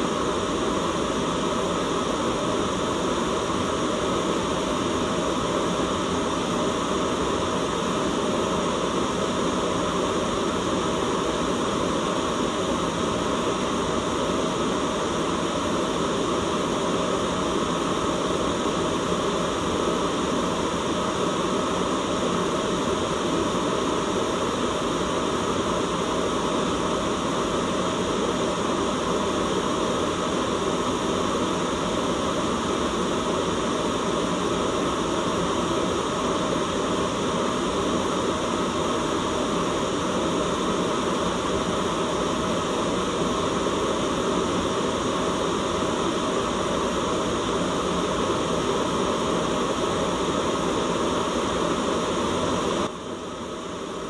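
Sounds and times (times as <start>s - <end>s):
white noise hiss: 0.0s - 54.0s.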